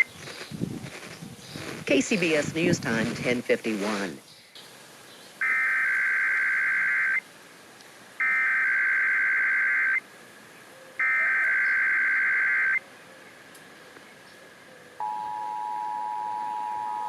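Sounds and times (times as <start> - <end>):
radio hiss: 0.0 - 13.0.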